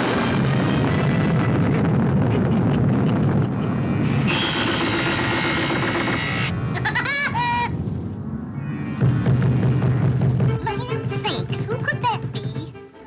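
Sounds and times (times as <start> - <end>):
cartoon storm wind and rain: 0.0 - 11.1
orchestral music: 6.5 - 13.0.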